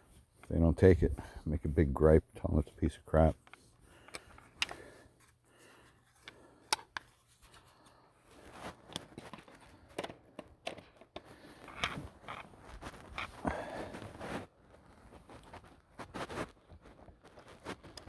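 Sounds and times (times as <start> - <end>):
plastic and metal parts clicking: 6.1 - 7.1, 8.9 - 12.5.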